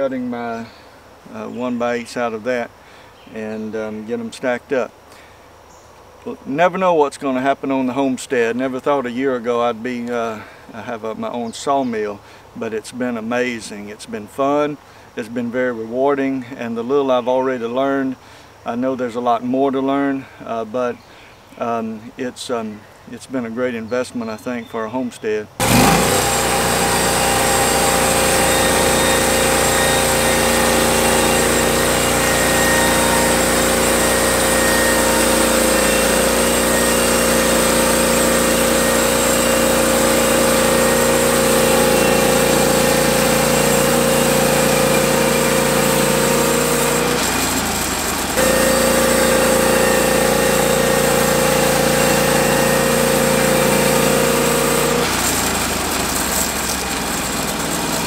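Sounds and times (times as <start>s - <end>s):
sawmill engine sawing lumber: 25.6s - 58.0s.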